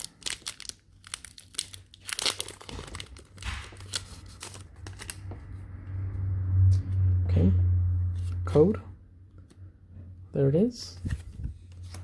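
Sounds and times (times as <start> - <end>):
foil wrapper crinkling and tearing: 0.0 - 5.2.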